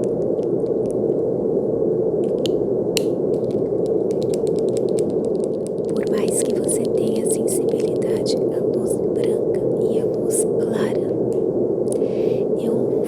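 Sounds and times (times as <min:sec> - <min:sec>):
deep rushing brown noise: 0:00.0 - 0:13.0
faint scattered clicks: 0:02.2 - 0:08.4.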